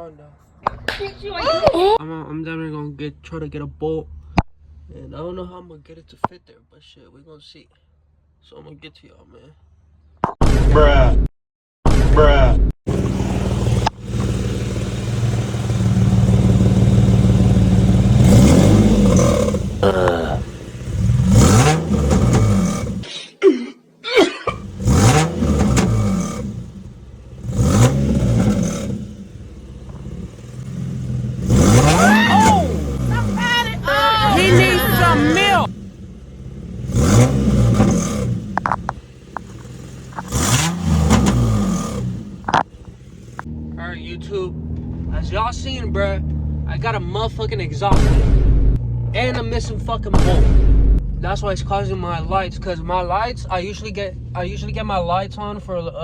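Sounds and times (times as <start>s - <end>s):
car engine idling and revving: 12.9s - 23.1s, 24.5s - 55.8s.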